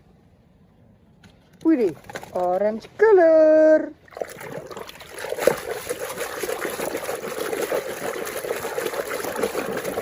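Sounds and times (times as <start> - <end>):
water trickling and splashing: 4.0 - 10.0.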